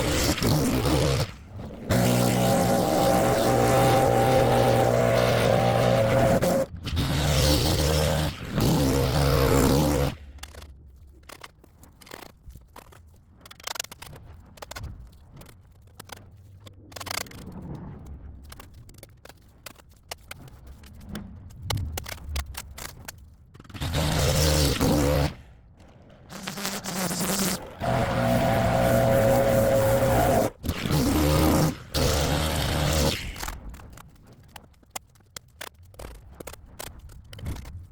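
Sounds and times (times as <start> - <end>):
small petrol engine running: 0.0 - 10.1, 26.3 - 33.1
scattered clicks: 0.0 - 37.9.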